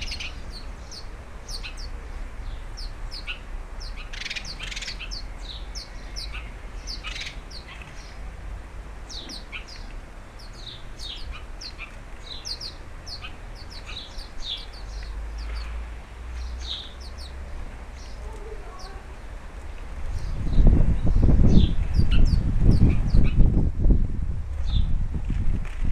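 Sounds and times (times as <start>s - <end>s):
small birds chirping: 0.0s - 8.4s, 9.0s - 19.3s, 20.0s - 23.5s, 24.6s - 25.0s.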